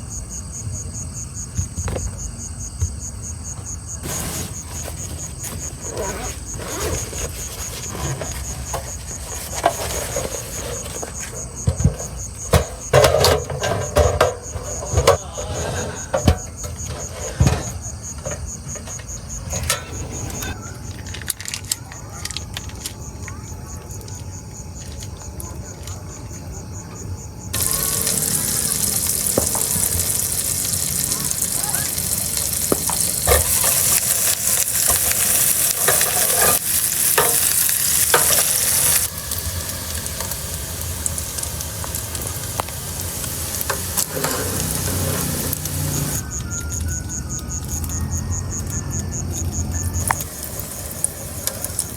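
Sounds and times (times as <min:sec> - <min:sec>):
food sizzling in a pan: 0:04.0 - 0:12.9, 0:27.6 - 0:46.8, 0:49.6 - 0:51.9.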